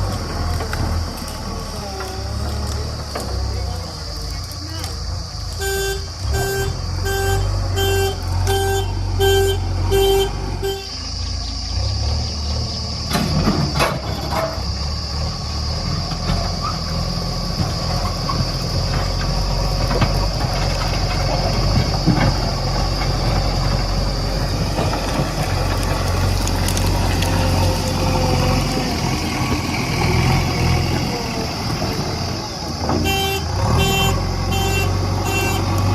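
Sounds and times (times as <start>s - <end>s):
heavy diesel engine running: 0.0s - 35.9s
reversing alarm beeping: 5.6s - 11.1s, 33.0s - 35.8s.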